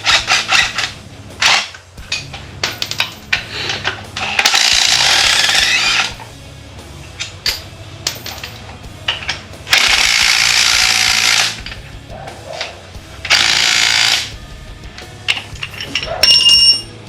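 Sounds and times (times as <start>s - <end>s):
impact wrench hammering: 9.1s - 11.8s, 13.2s - 14.4s.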